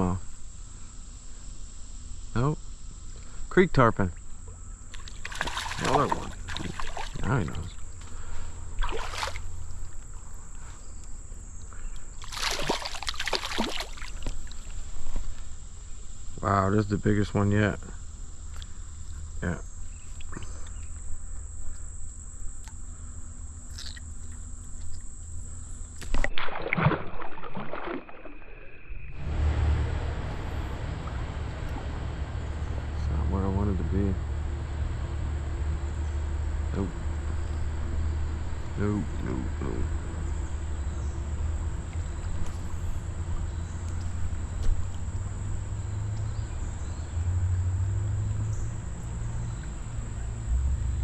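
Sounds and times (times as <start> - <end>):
insects trilling: 0.0 - 51.0
low rumble: 28.8 - 51.0.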